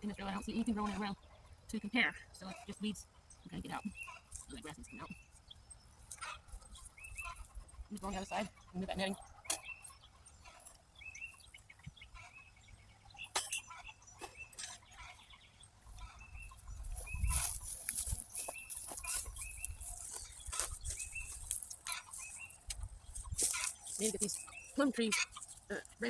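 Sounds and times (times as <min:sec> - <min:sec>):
chickens clucking: 0:06.0 - 0:26.0.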